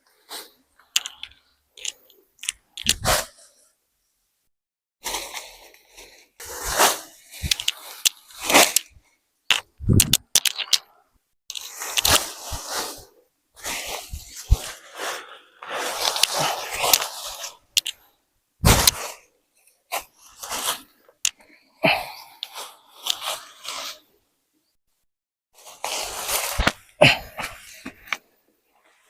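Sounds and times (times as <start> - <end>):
sharp clicks: 9.5 - 10.9.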